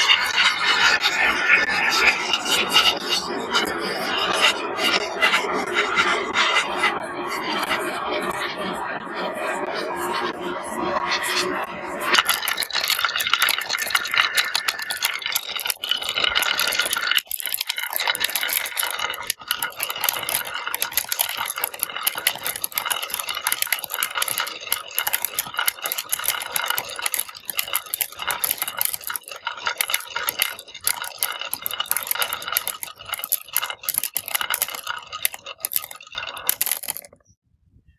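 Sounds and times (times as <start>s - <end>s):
marbles rolling and clacking: 12.0s - 37.3s.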